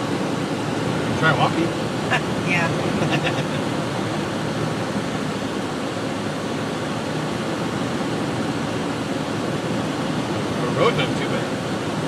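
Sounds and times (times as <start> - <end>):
vehicle driving on snowy road: 0.0 - 12.0.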